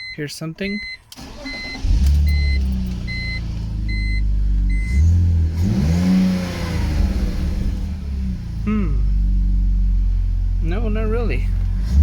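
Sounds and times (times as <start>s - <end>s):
warning chime beeping: 0.0s - 5.0s
car engine idling and revving: 1.1s - 12.0s.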